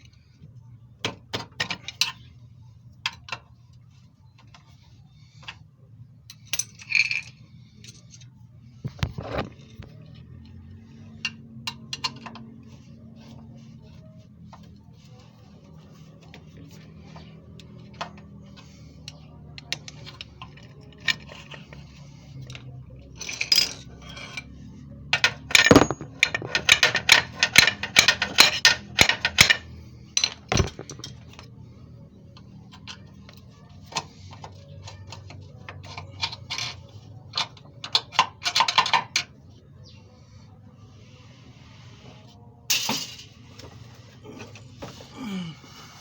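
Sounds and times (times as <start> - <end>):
metal hand tools clinking: 25.2 - 29.6.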